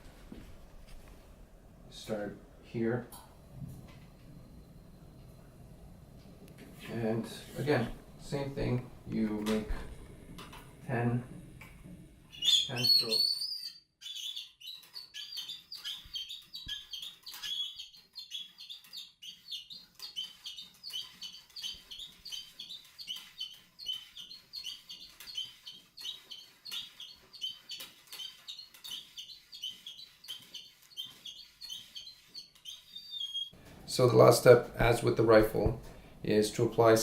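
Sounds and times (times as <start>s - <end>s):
cleaning pad squeaking in barrel: 12.3s - 35.6s.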